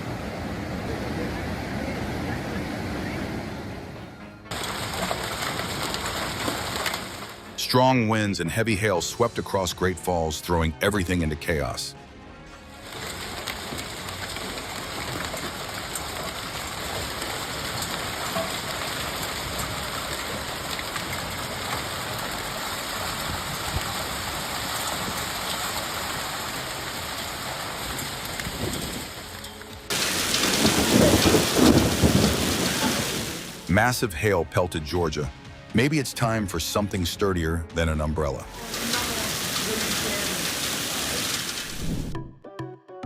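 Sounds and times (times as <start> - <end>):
strong wind: 0.0 - 4.2, 27.4 - 29.2, 30.2 - 33.6
hail and rain pelting: 4.5 - 9.7, 12.7 - 42.2.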